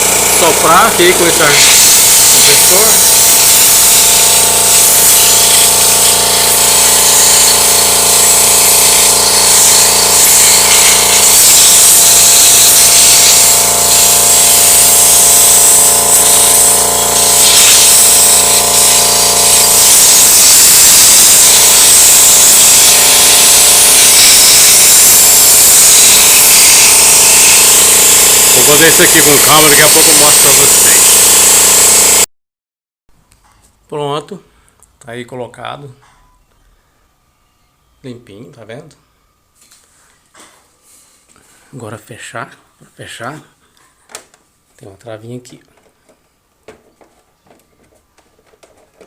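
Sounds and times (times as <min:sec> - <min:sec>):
compressed air hissing: 0:00.0 - 0:32.2
compressor motor humming: 0:00.0 - 0:32.3.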